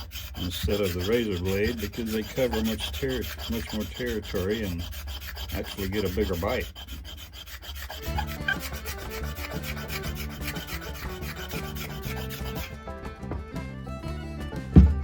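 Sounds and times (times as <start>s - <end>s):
hand scraper scraping wood: 0.0s - 12.9s, 14.6s - 15.0s
background music: 8.0s - 15.0s.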